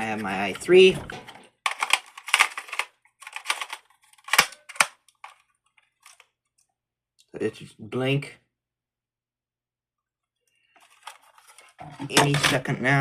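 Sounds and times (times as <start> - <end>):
plastic clicking and rattling: 0.5 - 6.6.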